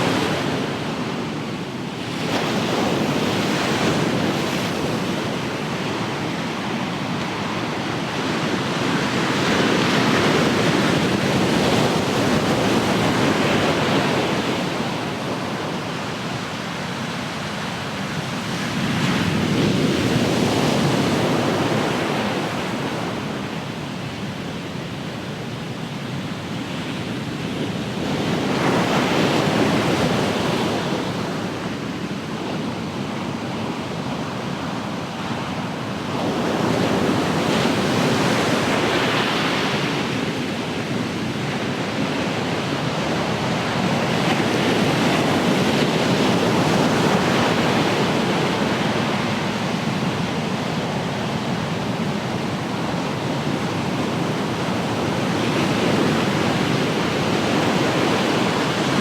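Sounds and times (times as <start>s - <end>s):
waves breaking on shore: 26.5s - 59.0s.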